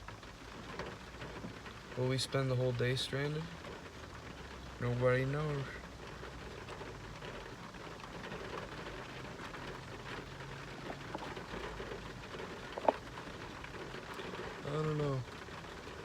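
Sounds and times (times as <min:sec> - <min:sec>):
pouring rain: 0:00.0 - 0:16.0
drops ticking: 0:08.4 - 0:16.0.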